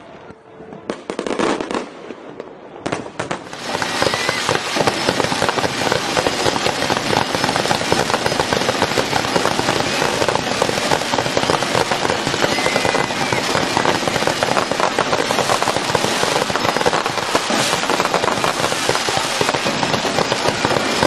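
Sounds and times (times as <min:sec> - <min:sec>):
fireworks crackling: 0:00.8 - 0:21.0.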